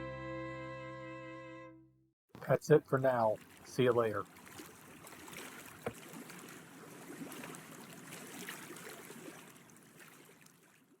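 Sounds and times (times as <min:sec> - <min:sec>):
waves lapping against boat hull: 0:02.4 - 0:11.0.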